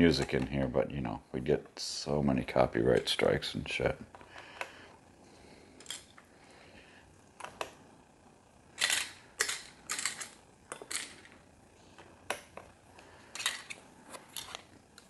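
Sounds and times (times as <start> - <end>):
plastic bricks clicking together: 8.8 - 11.4.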